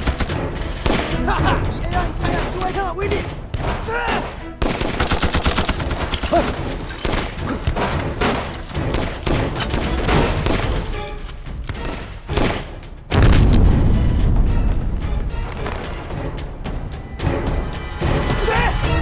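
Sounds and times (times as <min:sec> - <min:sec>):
heavy gunfire: 0:00.0 - 0:01.4, 0:02.2 - 0:11.0.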